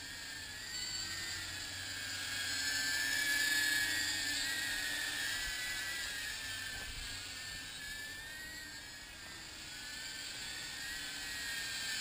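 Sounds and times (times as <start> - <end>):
drone propeller buzz: 0.0 - 12.0.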